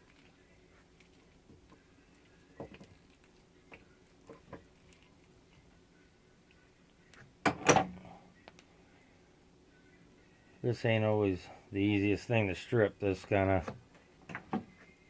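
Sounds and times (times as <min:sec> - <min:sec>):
tools clicking and tapping on cable: 0:01.0 - 0:05.1.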